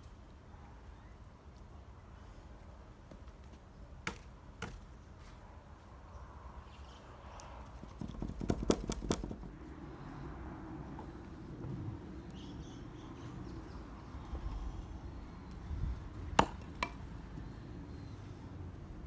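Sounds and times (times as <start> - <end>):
axe splitting firewood: 4.0 - 4.9, 7.9 - 9.5, 16.3 - 17.0.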